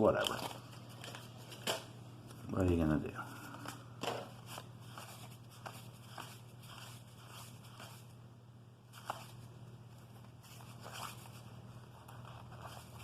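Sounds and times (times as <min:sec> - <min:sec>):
paper cards clicking and rustling: 0:00.0 - 0:01.9, 0:03.5 - 0:08.0, 0:08.9 - 0:09.5
low steady hum: 0:00.0 - 0:13.0.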